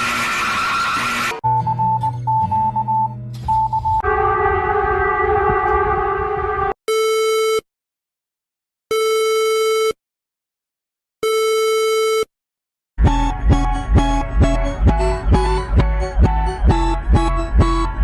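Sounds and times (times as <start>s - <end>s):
steady alarm tone chord: 4.0s - 6.8s
guitar music: 13.0s - 18.0s.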